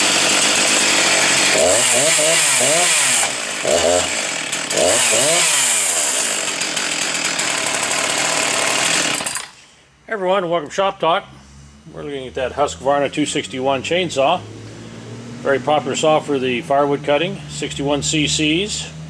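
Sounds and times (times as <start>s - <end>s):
chainsaw running at high revs: 0.0s - 9.6s.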